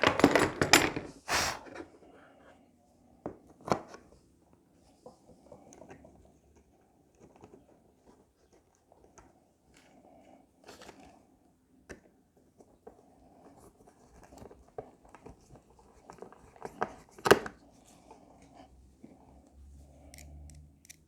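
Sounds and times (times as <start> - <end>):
tools clicking and knocking on wood: 0.0 - 1.2, 20.0 - 21.0.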